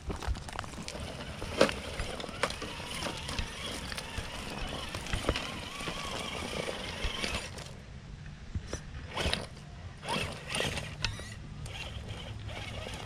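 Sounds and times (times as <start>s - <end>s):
electric motor whirring: 1.0s - 7.8s, 9.1s - 13.0s.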